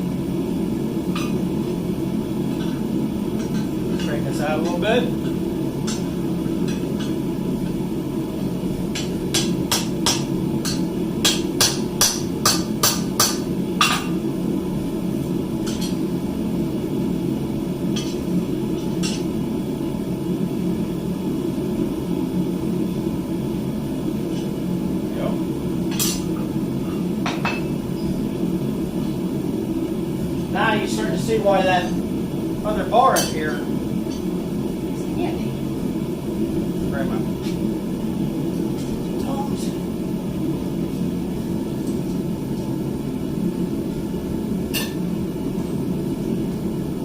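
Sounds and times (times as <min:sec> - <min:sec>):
steady low hum: 0:00.0 - 0:47.0
hammer striking steel on anvil: 0:08.9 - 0:14.2.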